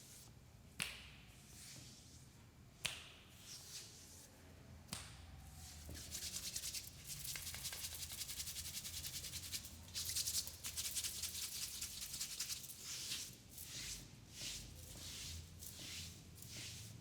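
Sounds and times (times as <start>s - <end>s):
hands rubbing hair and scalp: 5.7s - 17.0s.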